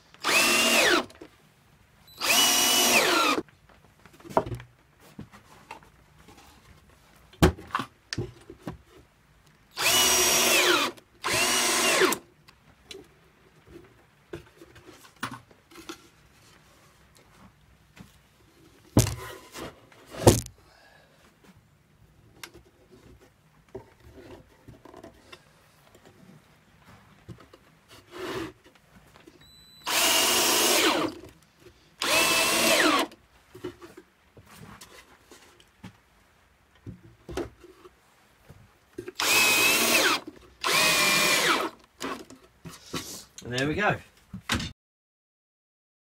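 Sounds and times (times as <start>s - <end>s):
cordless drill driving screws: 0.2s - 1.2s, 2.2s - 3.4s, 9.8s - 12.2s, 29.8s - 31.2s, 32.0s - 33.2s, 39.2s - 42.3s.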